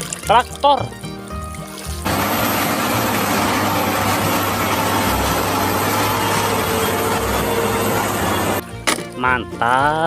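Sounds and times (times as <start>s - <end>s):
tractor engine idling: 2.0s - 8.6s.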